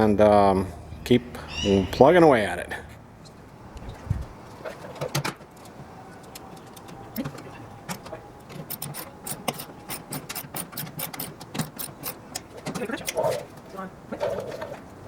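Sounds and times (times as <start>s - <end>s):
hand tool clicks and taps: 7.9s - 13.2s.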